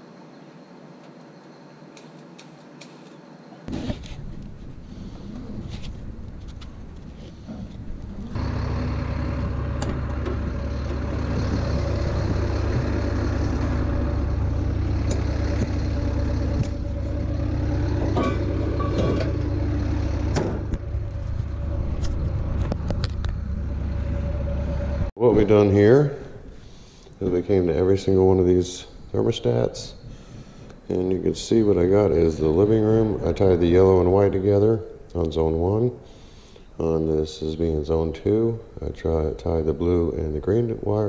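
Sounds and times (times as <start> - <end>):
engine running: 4.2 - 25.2, 30.5 - 35.1.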